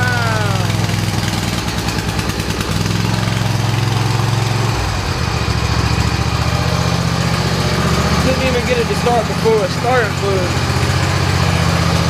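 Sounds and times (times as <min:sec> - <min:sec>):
mower engine running: 0:00.0 - 0:12.0.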